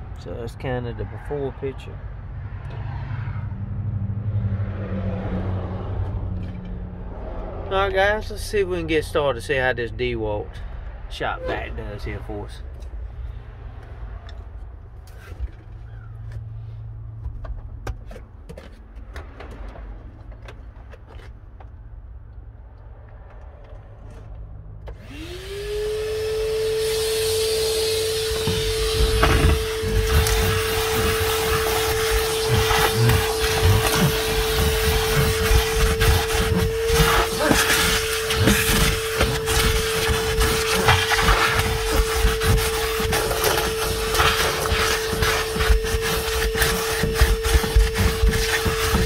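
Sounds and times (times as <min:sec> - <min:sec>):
shop vacuum motor whine: 0:24.9 - 0:49.0.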